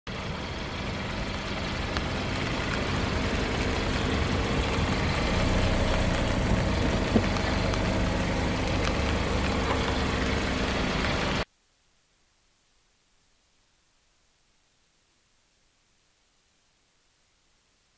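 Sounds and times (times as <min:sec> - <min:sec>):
car engine running: 0:00.1 - 0:11.4.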